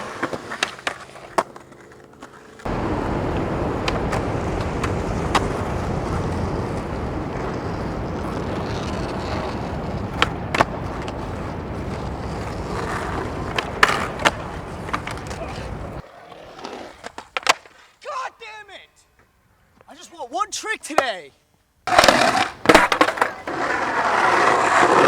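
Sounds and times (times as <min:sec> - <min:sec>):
skateboard wheels on rough pavement: 0:00.0 - 0:18.2, 0:21.8 - 0:25.0.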